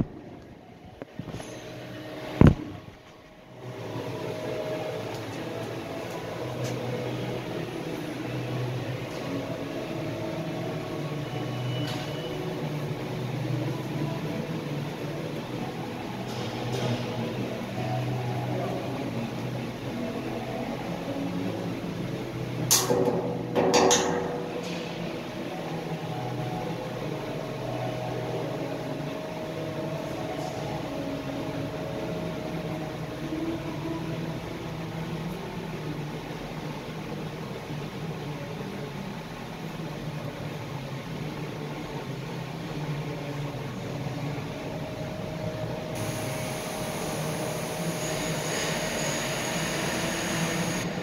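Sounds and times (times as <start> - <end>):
arc welding buzzing hum: 44.8 - 51.0.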